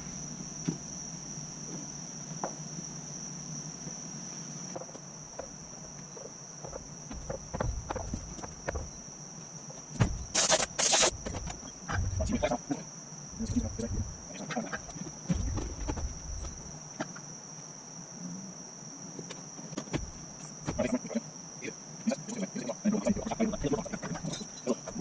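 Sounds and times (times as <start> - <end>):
crickets chirring: 0.0 - 25.0
handling knocks: 9.9 - 10.4
short loud noise bursts: 10.3 - 11.2.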